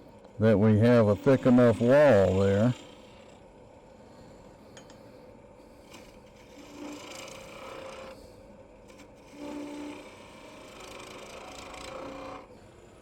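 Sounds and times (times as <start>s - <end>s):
turning tool cutting wood: 0.6s - 3.4s, 5.9s - 8.2s, 8.9s - 12.8s
wood lathe running: 0.6s - 3.4s, 5.9s - 8.2s, 8.9s - 12.9s.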